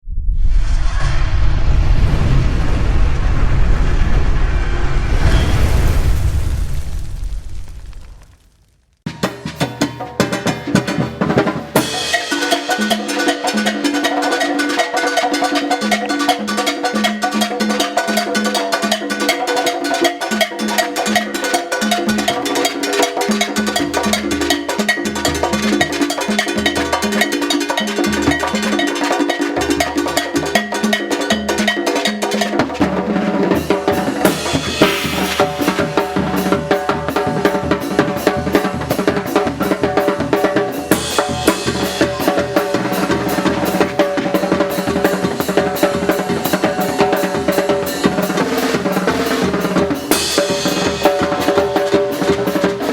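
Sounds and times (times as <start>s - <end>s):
brass band playing: 32.8s - 52.9s
cymbal crashes: 33.6s - 40.2s.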